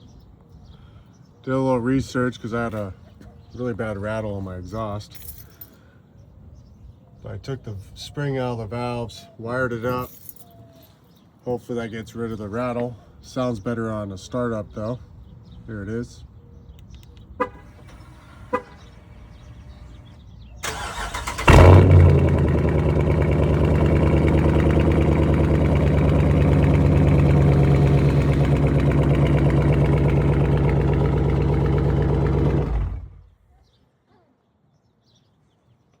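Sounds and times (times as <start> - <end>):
car engine starter cranking: 17.4 - 23.8
car engine idling: 17.4 - 33.3.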